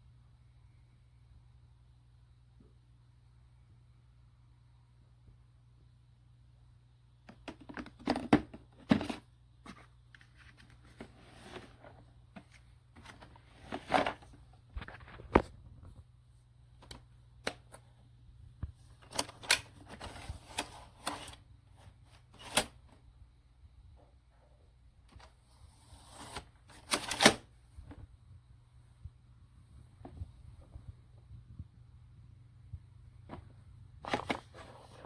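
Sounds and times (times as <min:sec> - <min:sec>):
objects being handled: 0:07.3 - 0:16.0, 0:33.2 - 0:35.0.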